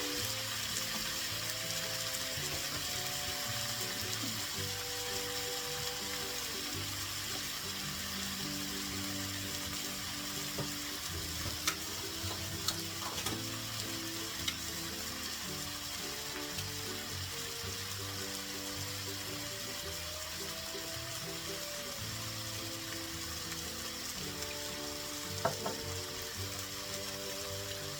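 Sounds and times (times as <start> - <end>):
food sizzling in a pan: 0.0 - 27.9
utensil tapping a pan: 10.4 - 13.6, 25.3 - 26.0.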